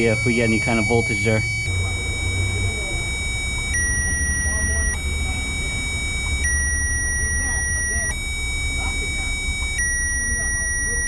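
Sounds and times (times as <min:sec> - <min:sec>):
alternating electronic tone: 0:00.0 - 0:11.0
low steady hum: 0:00.0 - 0:11.0.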